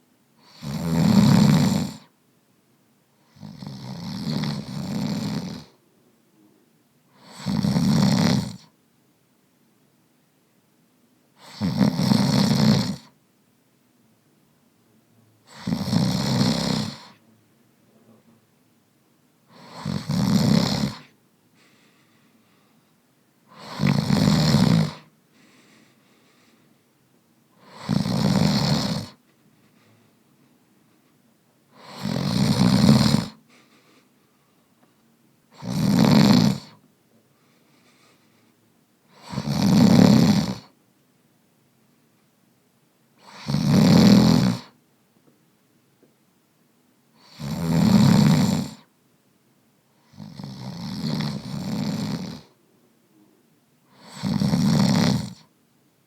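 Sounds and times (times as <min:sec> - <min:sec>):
man snoring: 0:00.4 - 0:02.1, 0:03.3 - 0:05.8, 0:07.2 - 0:08.7, 0:11.4 - 0:13.1, 0:15.4 - 0:17.2, 0:19.5 - 0:21.1, 0:23.5 - 0:25.1, 0:27.6 - 0:29.2, 0:31.7 - 0:33.4, 0:35.5 - 0:36.8, 0:39.1 - 0:40.7, 0:43.2 - 0:44.8, 0:47.2 - 0:48.9, 0:50.0 - 0:52.6, 0:53.9 - 0:55.5
quiet breathing: 0:20.9 - 0:24.0, 0:24.8 - 0:27.9, 0:29.0 - 0:32.2, 0:33.2 - 0:35.6, 0:36.6 - 0:39.3.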